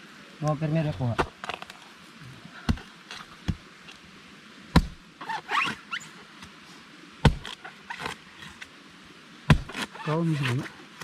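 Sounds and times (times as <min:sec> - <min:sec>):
sharp knocks: 0:04.7 - 0:05.0, 0:09.5 - 0:09.8.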